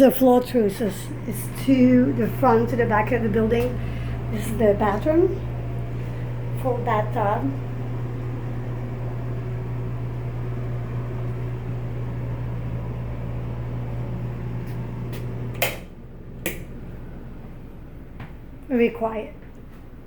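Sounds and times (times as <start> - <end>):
exhaust fan humming: 0.0 - 20.0
fan switch click: 14.7 - 16.8.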